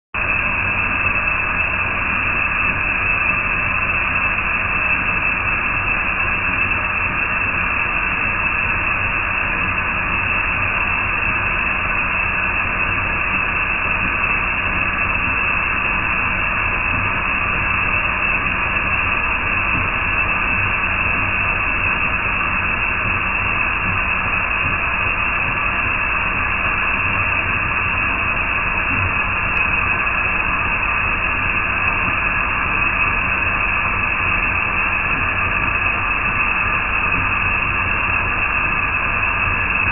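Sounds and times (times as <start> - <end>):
faint hum: 0.2 - 39.9.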